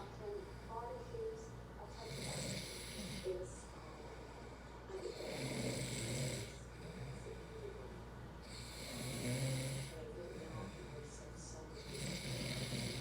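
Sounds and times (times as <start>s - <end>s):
man snoring loudly: 2.1s - 3.2s, 5.1s - 6.6s, 8.5s - 10.0s, 11.8s - 13.0s.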